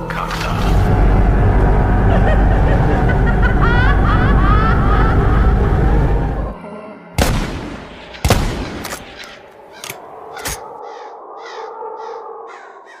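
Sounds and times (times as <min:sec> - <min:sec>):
sustained drone: 0:00.0 - 0:08.1
sharp cracks: 0:07.2 - 0:10.6.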